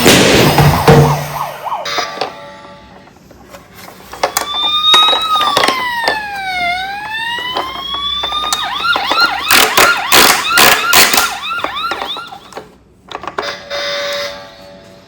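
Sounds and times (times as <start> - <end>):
sharp knocks: 0.0 - 1.5
toy siren wailing and yelping: 1.1 - 2.6, 4.2 - 12.6.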